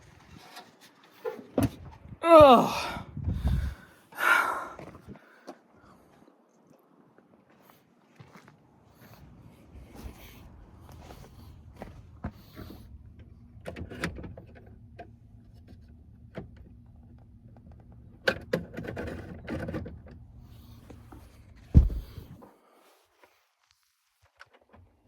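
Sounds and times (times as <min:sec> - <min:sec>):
steady low hum: 0:20.3 - 0:22.4
loud thump: 0:21.7 - 0:22.3.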